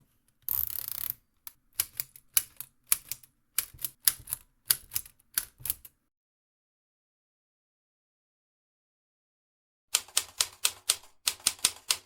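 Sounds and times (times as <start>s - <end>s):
typewriter keystrokes clacking: 10.0s - 12.0s
typewriter rattle: 10.0s - 12.0s.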